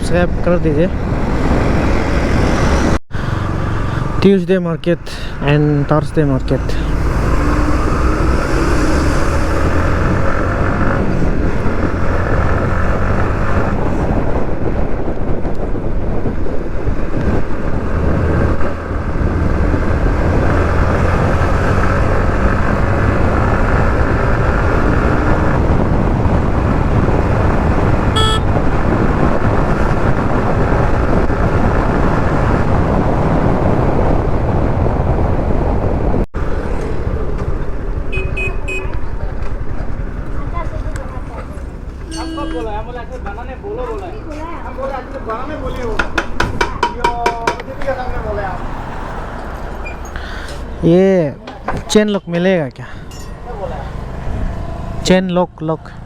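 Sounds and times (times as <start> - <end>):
road noise: 0.0 - 56.0
motorcycle engine: 18.6 - 31.4, 36.4 - 44.0
horn toot: 28.1 - 28.6, 38.1 - 39.0, 42.0 - 42.9.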